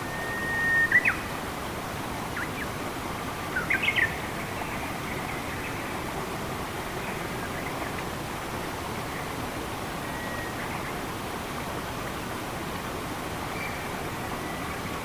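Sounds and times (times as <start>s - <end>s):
running water rushing: 0.0s - 15.0s
bird singing: 0.1s - 1.2s, 3.6s - 5.8s, 13.5s - 14.8s.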